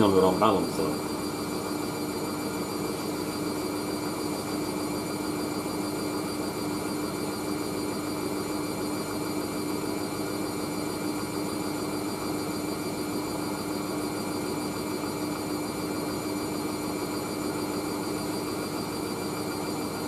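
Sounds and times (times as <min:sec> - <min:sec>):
washing machine spinning: 0:00.0 - 0:20.0.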